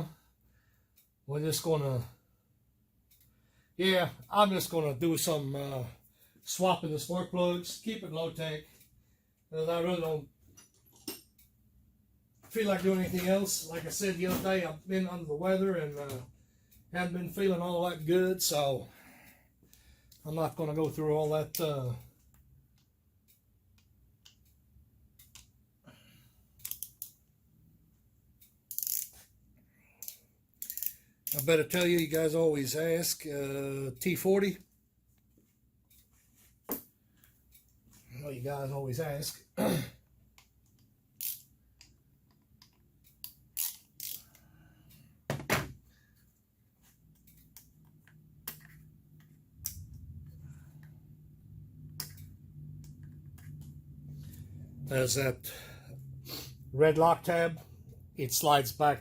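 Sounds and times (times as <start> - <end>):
tools clicking and knocking: 10.5 - 11.5, 26.6 - 27.2, 28.7 - 29.3, 30.0 - 32.1, 40.4 - 45.8, 47.1 - 50.0.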